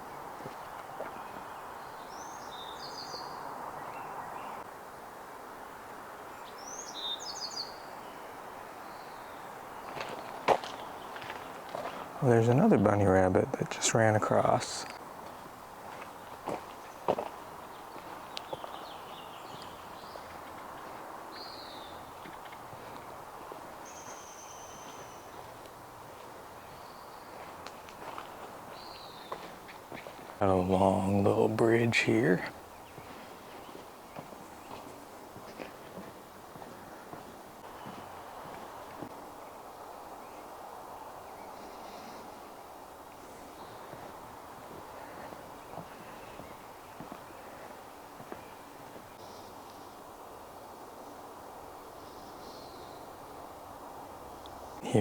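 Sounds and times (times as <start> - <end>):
outdoor background hush: 0.0 - 55.0
small bird calling: 16.6 - 38.2, 43.1 - 50.0
long steady bird whistle: 48.4 - 50.0.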